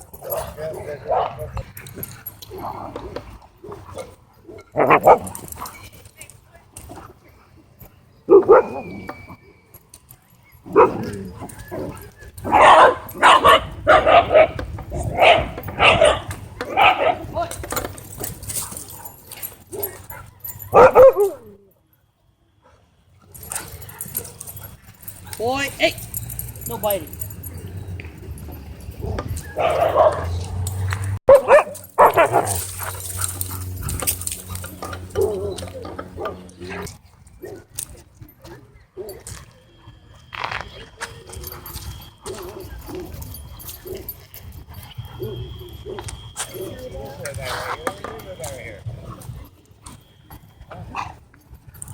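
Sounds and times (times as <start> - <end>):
dogs barking: 0.0 - 5.7, 8.2 - 8.9, 10.5 - 21.5, 23.4 - 37.7, 41.3 - 47.8, 50.8 - 51.2.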